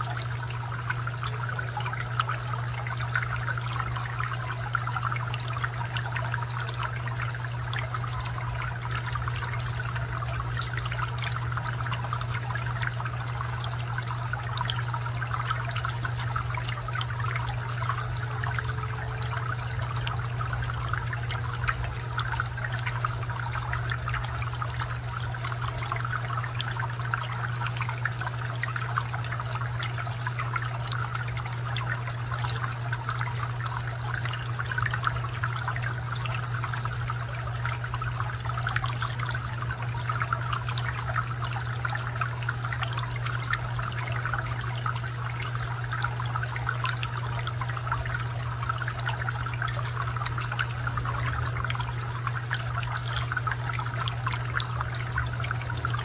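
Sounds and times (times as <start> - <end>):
fountain water trickling: 0.0 - 56.0
low hum: 54.1 - 56.0.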